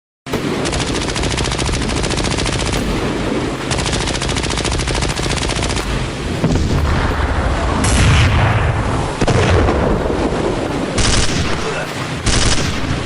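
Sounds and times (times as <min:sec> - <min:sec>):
machine gun bursts: 0:00.4 - 0:06.2.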